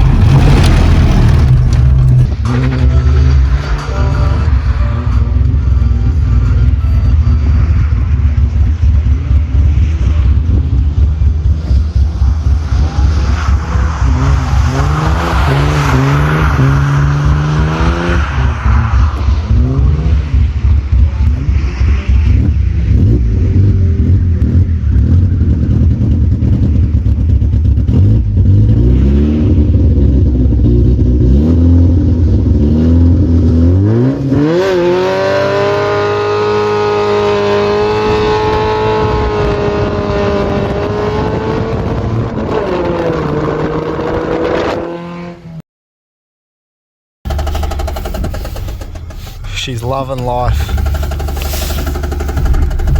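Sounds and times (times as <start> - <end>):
car engine revving: 0.0 - 5.0, 47.3 - 52.9.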